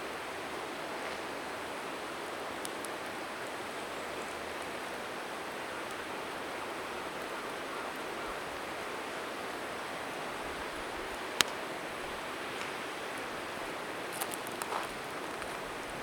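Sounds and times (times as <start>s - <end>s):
faint bonfire crackles: 0.0s - 16.0s
river rushing: 0.0s - 16.0s.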